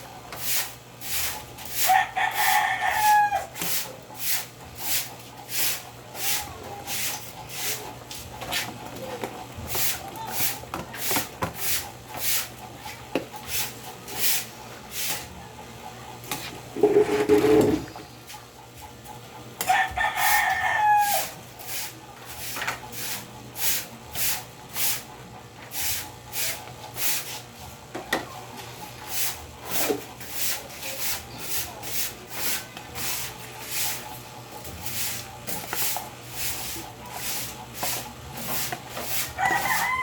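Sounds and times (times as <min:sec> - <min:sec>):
rooster crowing: 0:01.8 - 0:03.6, 0:19.6 - 0:21.4, 0:39.4 - 0:40.0.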